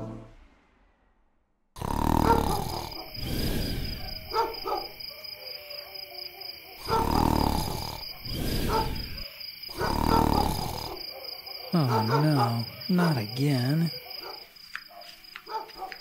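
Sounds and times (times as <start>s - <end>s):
large dog barking: 2.2s - 3.2s, 3.8s - 7.7s, 8.6s - 12.9s, 13.9s - 16.0s.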